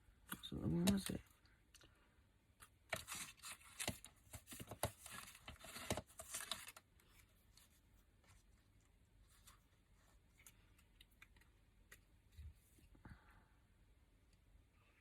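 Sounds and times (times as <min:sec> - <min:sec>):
paper rustling: 0:02.9 - 0:11.4.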